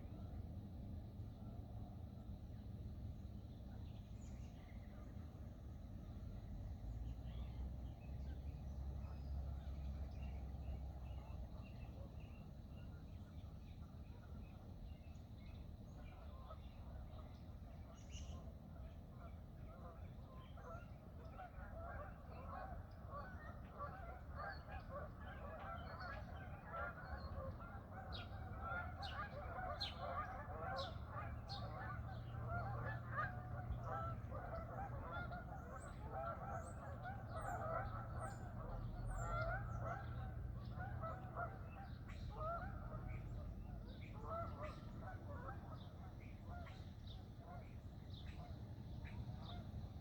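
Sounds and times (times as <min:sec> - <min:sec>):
geese honking: 0:25.2 - 0:43.2
low steady rumble: 0:29.9 - 0:50.0.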